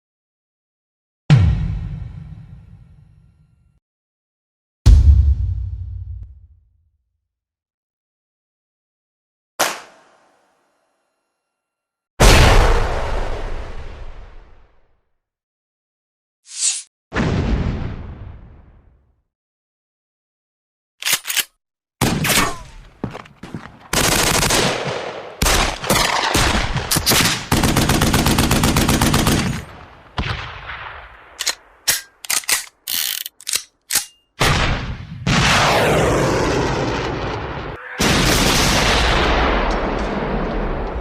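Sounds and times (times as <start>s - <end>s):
explosion booms: 4.9s - 6.6s, 17.2s - 18.8s, 34.4s - 41.0s
rapid burst of shots: 23.9s - 29.7s
gunshots: 23.9s - 32.2s, 37.9s - 41.0s.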